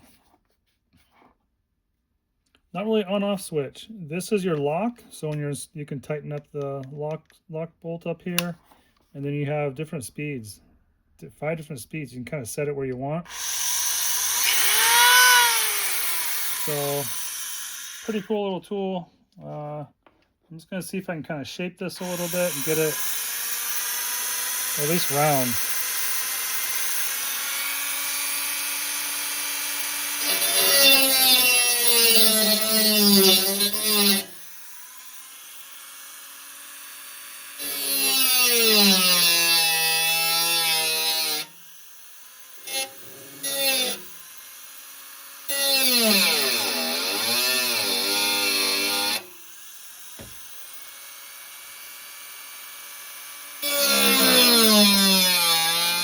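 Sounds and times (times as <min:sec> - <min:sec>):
rotary tool grinding sheet metal: 0:13.3 - 0:18.3, 0:22.0 - 0:56.0.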